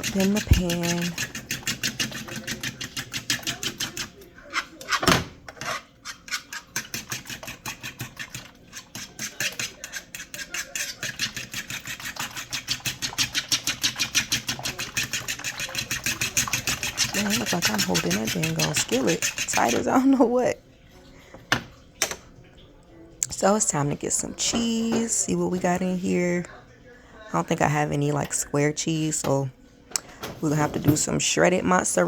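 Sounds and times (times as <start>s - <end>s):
utensil scraping a skillet: 0.0s - 20.1s.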